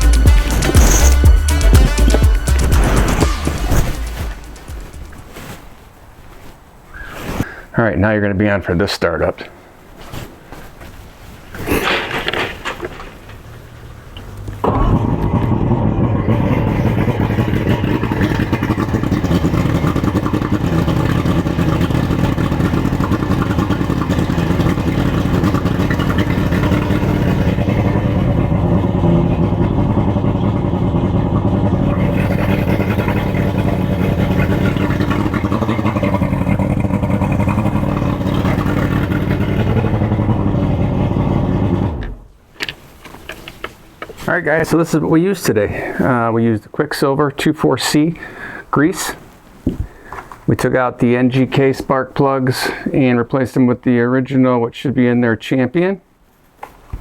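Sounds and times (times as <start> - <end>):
boat motor running: 0.0 - 5.4, 13.3 - 42.3.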